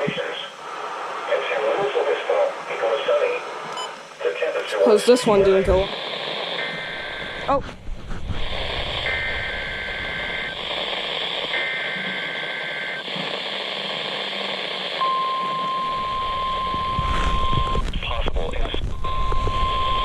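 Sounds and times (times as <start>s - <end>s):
radio hiss: 0.0s - 20.0s
steady warning alarm tone: 4.8s - 7.6s, 8.4s - 17.8s
warbling digital data tones: 4.8s - 7.6s, 8.4s - 17.8s.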